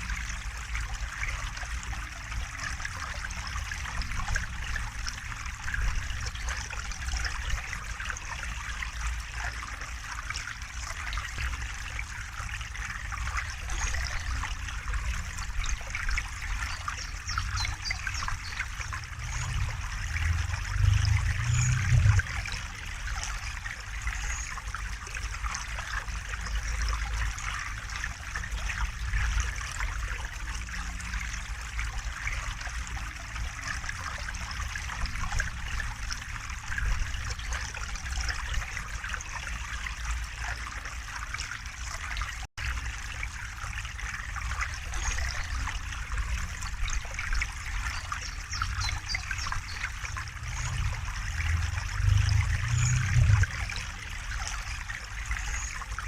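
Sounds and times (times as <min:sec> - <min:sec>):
river water flowing: 0:00.0 - 0:56.0
low rumble: 0:18.9 - 0:22.8, 0:50.2 - 0:54.4.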